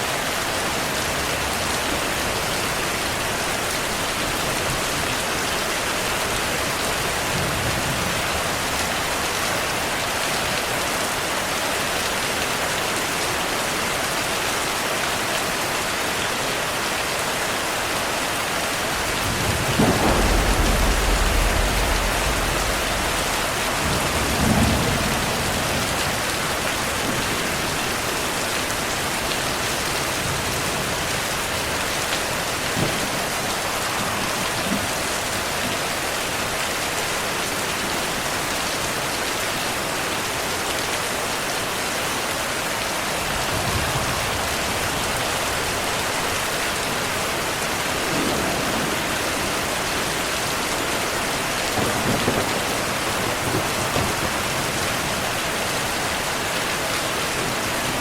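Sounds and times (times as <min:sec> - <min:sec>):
steady rain falling: 0:00.0 - 0:58.0
thunder rumbling: 0:18.7 - 0:28.4, 0:47.0 - 0:56.0.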